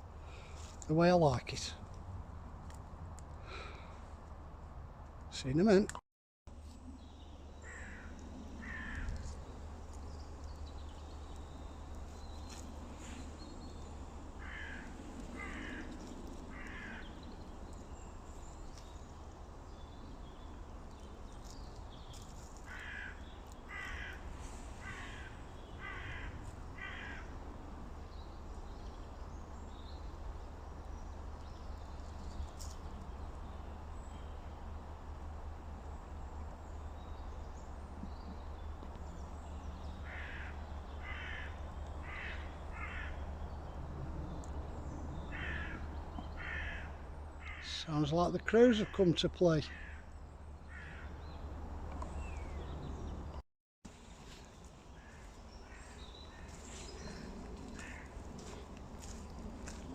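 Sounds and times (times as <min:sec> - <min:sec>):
crows cawing: 0:07.6 - 0:09.3, 0:14.4 - 0:17.2, 0:22.6 - 0:27.4, 0:40.0 - 0:43.3, 0:45.3 - 0:47.7, 0:49.7 - 0:50.1, 0:50.7 - 0:51.2, 0:55.0 - 0:59.8
steady low rumble: 0:53.9 - 0:59.9.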